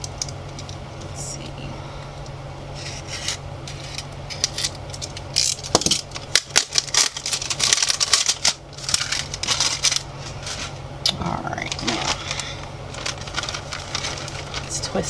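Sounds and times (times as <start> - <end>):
steady low hum: 0.0 - 15.0
wrapper crinkling and rustling: 2.8 - 10.8, 11.5 - 15.0.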